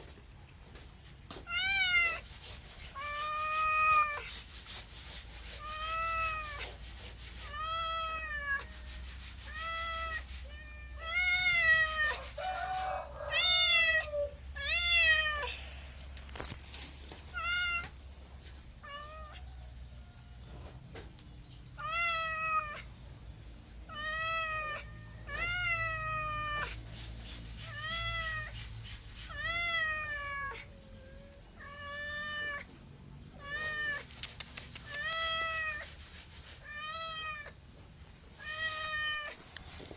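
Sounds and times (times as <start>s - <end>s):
cat meowing: 1.4s - 2.2s, 2.9s - 4.3s, 5.6s - 6.8s, 7.4s - 15.6s, 17.3s - 18.0s, 18.8s - 19.5s, 21.7s - 22.9s, 23.8s - 26.8s, 27.6s - 28.6s, 29.3s - 36.0s, 36.6s - 37.6s, 38.4s - 39.4s.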